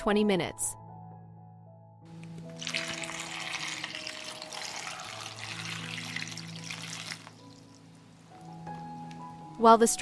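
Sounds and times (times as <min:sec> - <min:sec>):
water pouring into bowl: 0:02.5 - 0:09.2.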